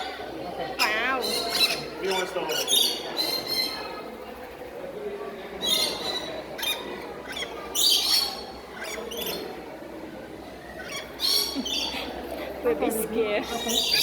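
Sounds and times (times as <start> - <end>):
parrots squawking: 0.8 - 3.9, 5.6 - 9.6, 10.6 - 12.2.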